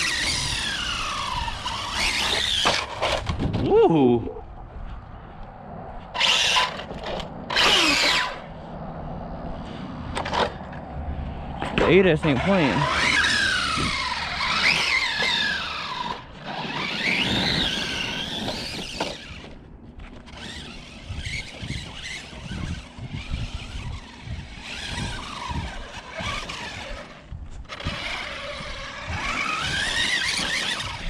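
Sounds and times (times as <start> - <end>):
rc truck motor whining: 0.0 - 3.6, 6.0 - 8.9, 9.5 - 10.8, 11.5 - 31.0
tyres crunching over dirt: 0.0 - 8.8, 11.6 - 31.0.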